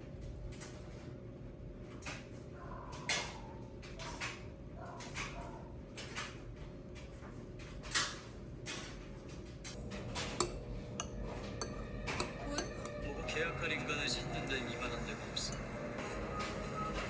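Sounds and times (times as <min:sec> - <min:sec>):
dishes and utensils clinking: 0:09.7 - 0:17.0
faint steady hum: 0:09.8 - 0:17.0.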